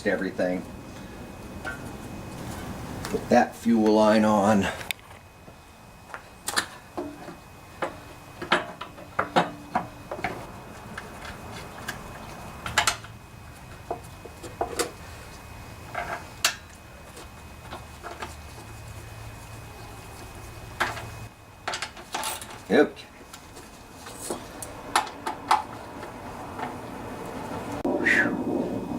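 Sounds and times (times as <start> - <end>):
tools and metal parts clinking: 6.5 - 13.1, 20.8 - 22.7.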